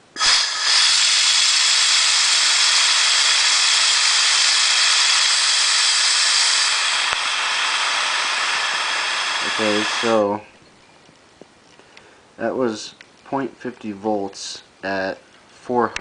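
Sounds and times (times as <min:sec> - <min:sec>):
air-driven generator running: 0:00.0 - 0:10.4
compressed air hissing: 0:00.0 - 0:10.4.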